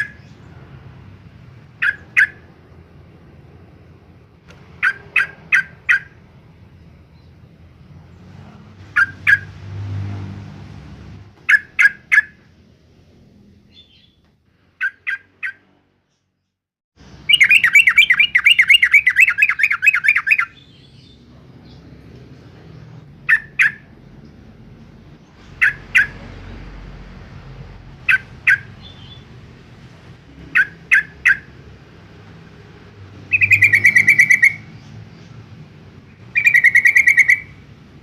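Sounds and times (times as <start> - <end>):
bird chirping: 0.0 - 0.7, 1.3 - 2.8, 4.7 - 9.6, 11.4 - 12.5, 13.2 - 26.6, 27.8 - 29.6, 30.3 - 38.0
bird fast run of repeated notes: 17.2 - 20.6, 30.4 - 31.9, 33.1 - 34.7, 36.2 - 37.7.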